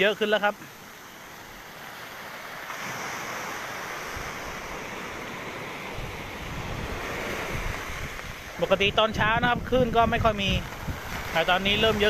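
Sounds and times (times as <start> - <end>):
storm surf washing ashore: 0.0 - 12.0
wind gusts on microphone: 1.4 - 12.0.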